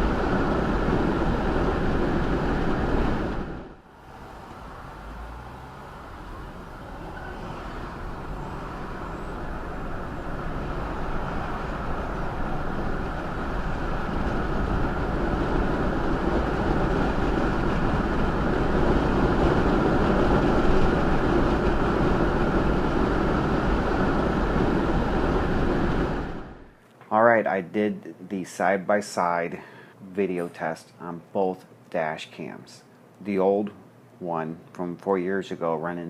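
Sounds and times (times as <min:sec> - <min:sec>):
car engine and tyre noise: 0:00.0 - 0:26.7.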